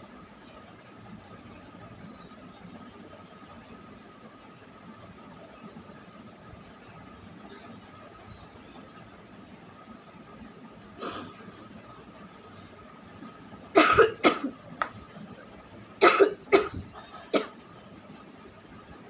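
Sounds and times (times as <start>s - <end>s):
person coughing: 13.8s - 14.5s, 16.0s - 17.5s.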